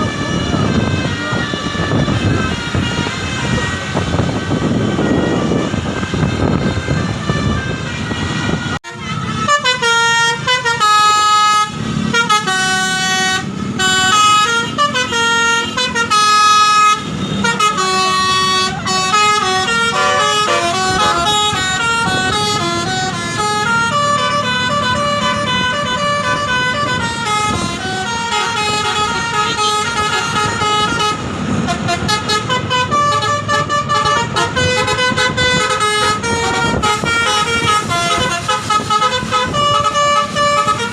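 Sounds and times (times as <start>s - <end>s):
bus engine running: 0.0s - 40.9s
multi-tone air horn tune: 0.0s - 40.9s
road noise: 0.0s - 40.9s.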